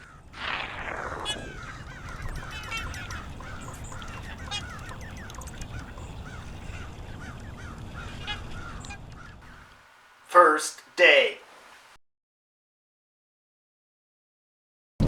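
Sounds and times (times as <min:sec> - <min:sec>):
waterfowl honking: 0:01.3 - 0:10.6.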